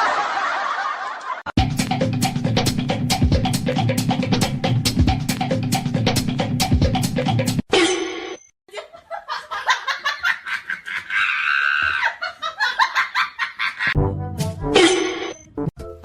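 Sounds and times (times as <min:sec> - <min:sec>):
music: 0:01.6 - 0:07.6, 0:14.0 - 0:14.8, 0:15.4 - 0:16.0
person laughing: 0:08.7 - 0:14.0.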